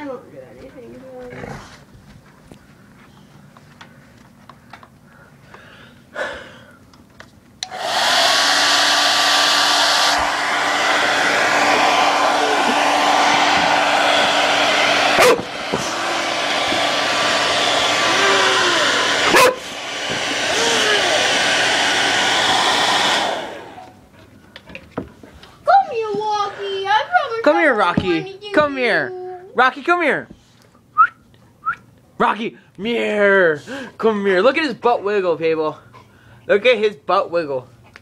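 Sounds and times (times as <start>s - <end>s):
hair dryer blowing: 7.6s - 24.1s.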